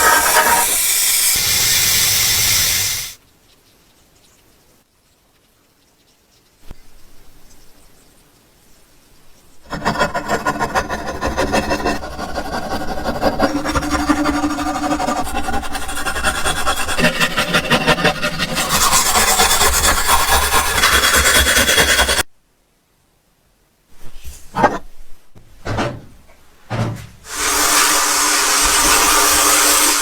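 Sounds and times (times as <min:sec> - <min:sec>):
rapid abrasive scraping: 0:00.0 - 0:03.2, 0:09.7 - 0:22.3, 0:27.3 - 0:30.0.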